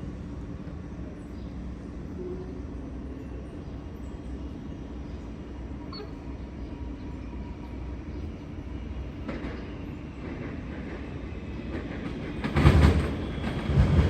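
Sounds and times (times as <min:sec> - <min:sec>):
electric train rumble: 0:00.0 - 0:14.0.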